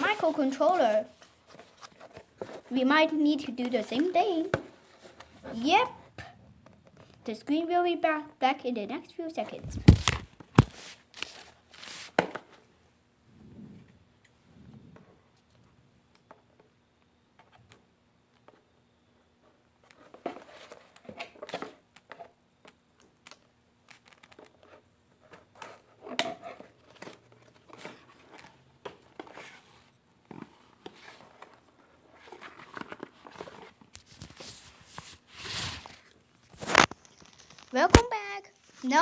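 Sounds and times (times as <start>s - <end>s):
cardboard packaging rustling: 0.0s - 2.8s, 9.6s - 12.4s, 26.5s - 38.9s.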